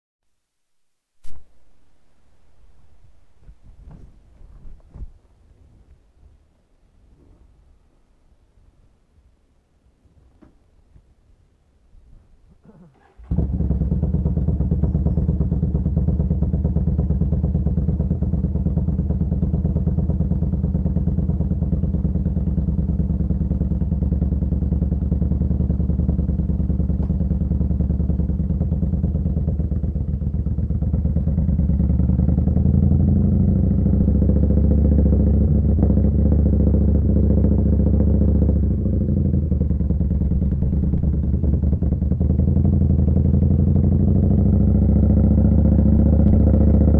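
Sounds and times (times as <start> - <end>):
motorcycle engine idling: 12.9 - 46.9.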